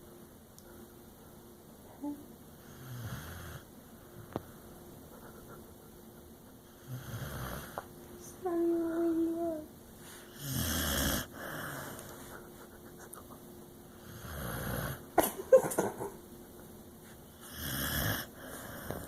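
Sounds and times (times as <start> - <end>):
dog snoring: 2.6 - 3.7, 6.7 - 7.8, 10.3 - 12.1, 14.0 - 15.0, 17.4 - 19.0.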